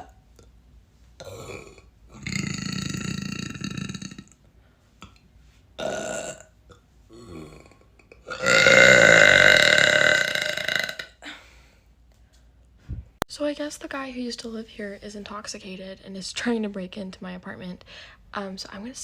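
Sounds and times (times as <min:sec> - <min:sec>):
woman burping: 0:01.2 - 0:04.4, 0:05.8 - 0:11.4.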